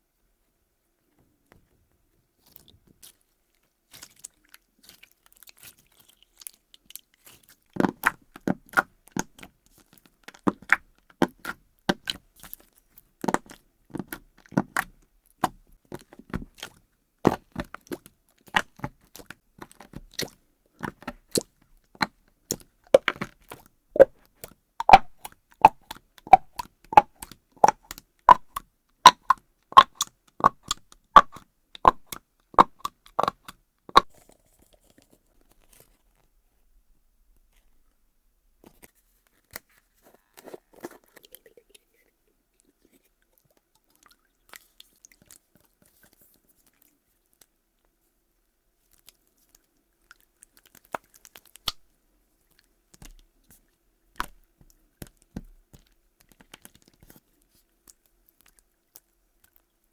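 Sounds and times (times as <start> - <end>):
slime clicks and pops: 24.8 - 33.4.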